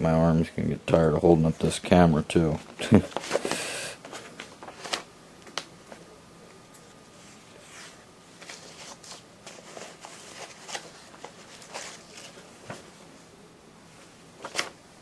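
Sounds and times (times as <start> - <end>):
paper pages turning: 2.6 - 6.0, 7.4 - 12.9, 14.4 - 14.8.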